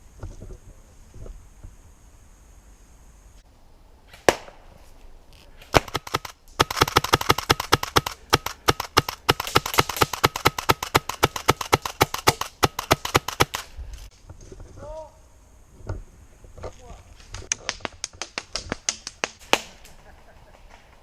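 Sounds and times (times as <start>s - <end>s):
airsoft gun firing rapid shots: 5.8s - 13.7s.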